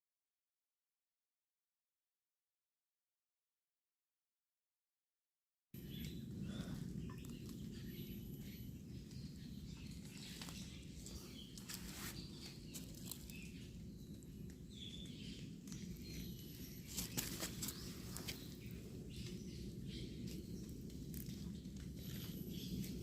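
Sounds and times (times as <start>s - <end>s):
steady low rumble: 5.8s - 23.0s.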